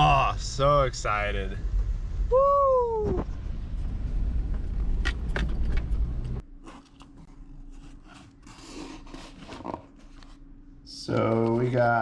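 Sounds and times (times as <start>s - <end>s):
vehicle rumble: 0.0s - 6.4s
faint steady hum: 0.0s - 12.0s.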